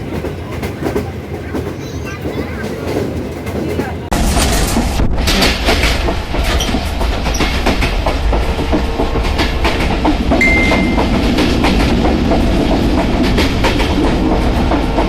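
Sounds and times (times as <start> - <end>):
train rumbling past: 0.0 - 15.0
wheels clicking over rail joints: 0.0 - 15.0.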